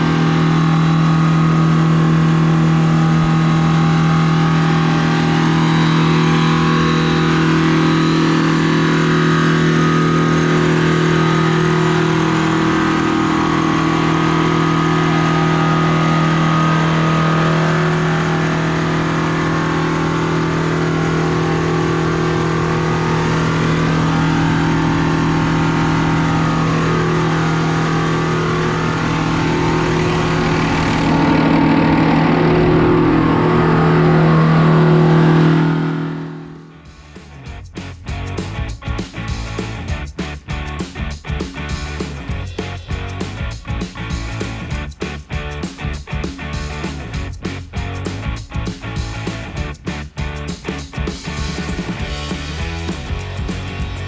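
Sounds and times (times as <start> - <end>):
combine harvester engine drone: 0.0 - 36.9.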